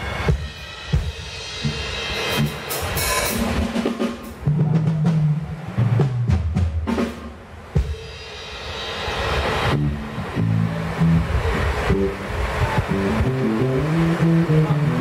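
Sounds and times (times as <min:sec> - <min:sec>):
low held notes: 0:09.5 - 0:15.0.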